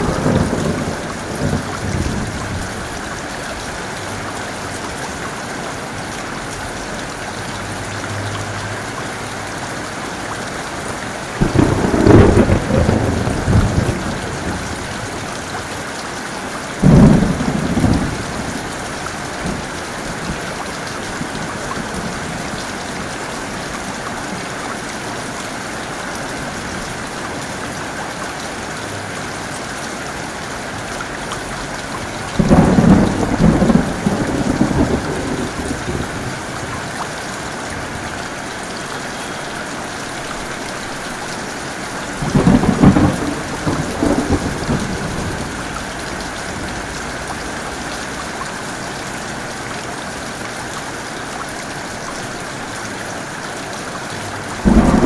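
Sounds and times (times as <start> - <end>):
thunder clapping and rumbling: 0.0 - 3.0, 11.3 - 15.6, 16.8 - 22.8, 32.0 - 37.0, 42.1 - 48.2, 54.5 - 55.0
heavy rain falling: 0.0 - 55.0.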